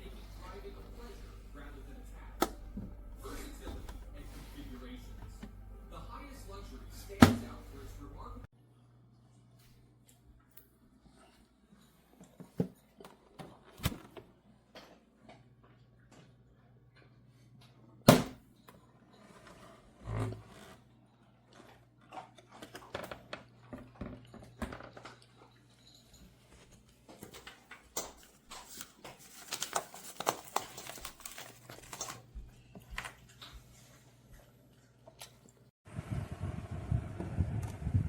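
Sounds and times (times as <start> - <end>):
rustling: 0.0 - 8.5
faint low hum: 0.0 - 10.7.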